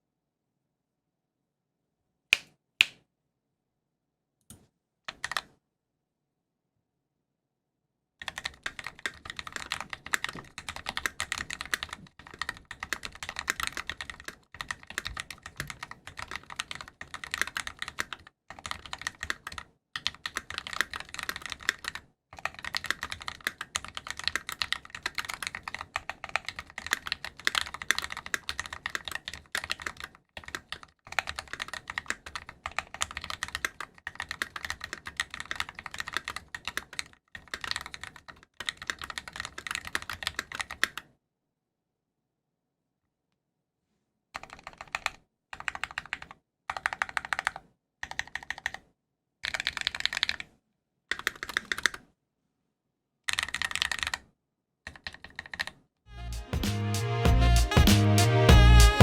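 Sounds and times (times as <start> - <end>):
mechanical keyboard typing: 5.1 - 5.5, 8.2 - 41.1, 44.4 - 48.8, 49.4 - 50.5, 51.1 - 52.0, 53.3 - 54.3, 54.9 - 55.8.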